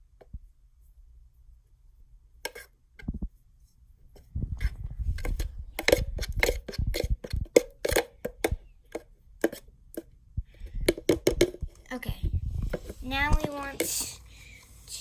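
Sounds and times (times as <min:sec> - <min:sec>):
spoon stirring and scraping container: 0:02.4 - 0:02.8, 0:04.2 - 0:11.9, 0:12.5 - 0:15.0.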